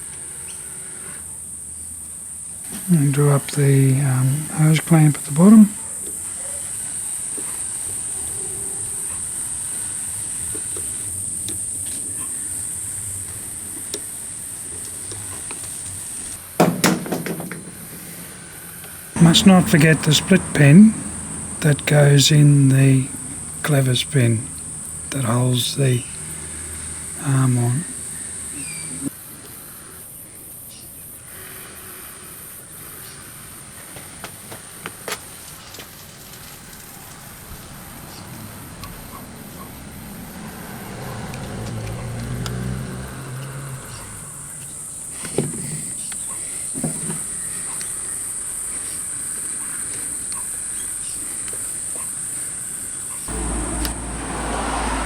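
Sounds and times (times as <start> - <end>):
steady high hiss: 0.0 - 40.5
hand tools clicking and knocking: 16.6 - 20.5.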